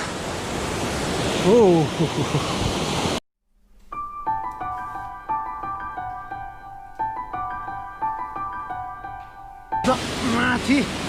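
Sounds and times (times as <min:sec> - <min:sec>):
ringing keyboard melody: 0:03.8 - 0:09.9.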